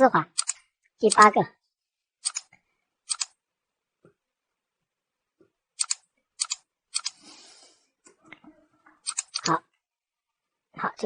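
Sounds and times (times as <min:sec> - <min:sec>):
computer mouse clicking: 0:00.4 - 0:01.3, 0:02.2 - 0:03.4, 0:05.8 - 0:07.2, 0:09.0 - 0:09.6.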